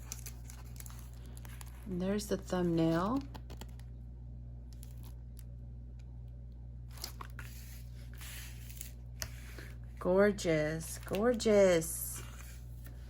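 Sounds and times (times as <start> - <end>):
packaging rustling and crinkling: 0.0 - 1.9
steady low hum: 0.0 - 13.0.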